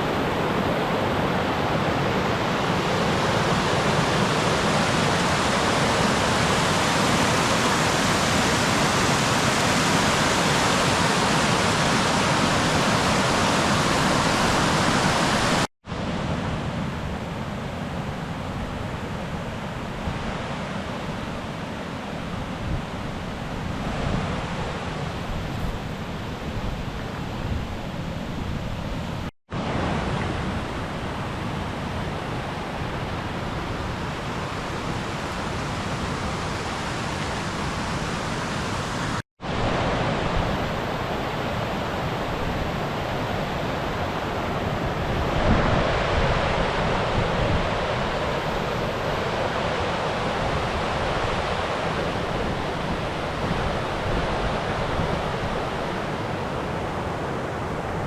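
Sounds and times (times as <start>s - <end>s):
stream rushing over rocks: 0.0s - 16.2s, 29.2s - 58.0s.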